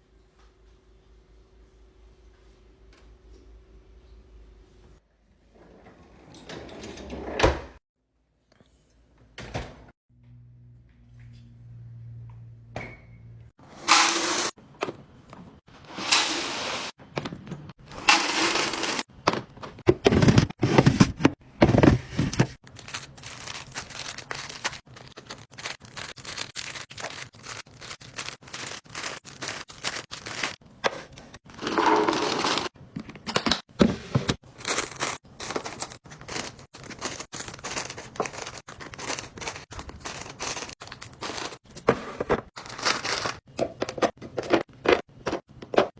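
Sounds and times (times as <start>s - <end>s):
knocks and scrapes of handled items: 17.1s - 25.2s, 30.2s - 45.9s
packaging crinkling and tearing: 22.6s - 30.6s, 34.4s - 41.6s, 42.6s - 43.4s.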